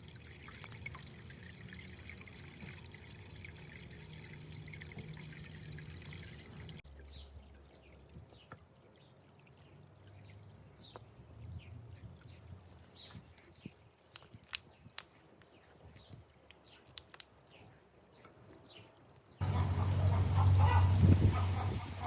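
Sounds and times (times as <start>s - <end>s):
fountain water splashing: 19.4s - 22.0s.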